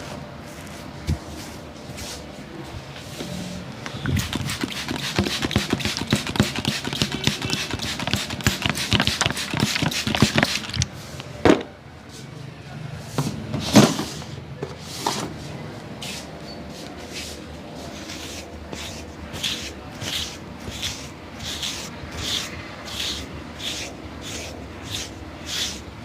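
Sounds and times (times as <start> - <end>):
hands rubbing skin and hair: 16.1 - 25.9.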